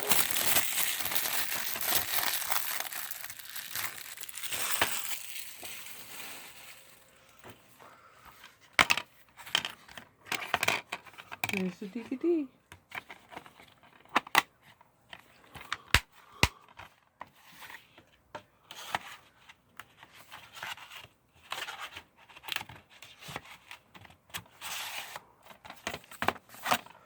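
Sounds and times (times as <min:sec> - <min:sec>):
plastic scraping and rustling: 0:00.0 - 0:12.1, 0:12.8 - 0:15.3.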